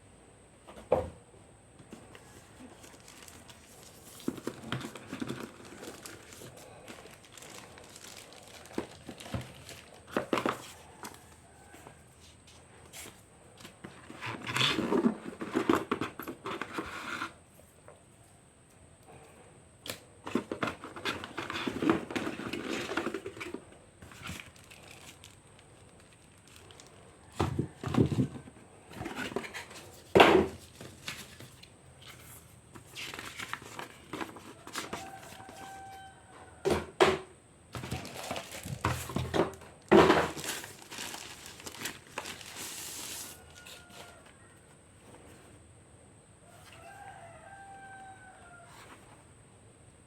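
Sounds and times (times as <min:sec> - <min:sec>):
plastic crinkling and tearing: 0:02.5 - 0:11.2, 0:21.1 - 0:27.1, 0:37.8 - 0:44.1.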